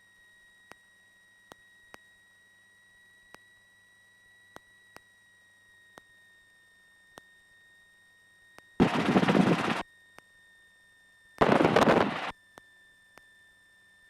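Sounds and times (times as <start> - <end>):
faint high electrical tone: 0.0 - 14.0
sharp clicks: 8.8 - 9.8, 11.4 - 12.3.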